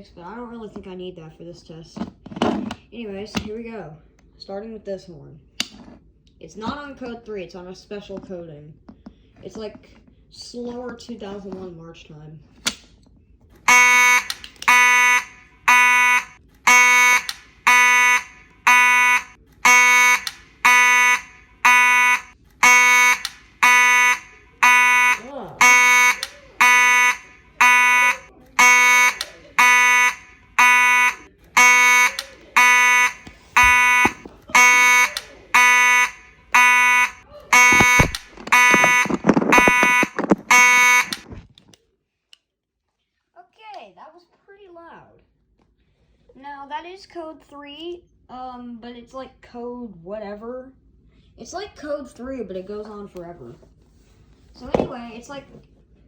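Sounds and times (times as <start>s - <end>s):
fire alarm horn blasts: 13.6s - 41.2s.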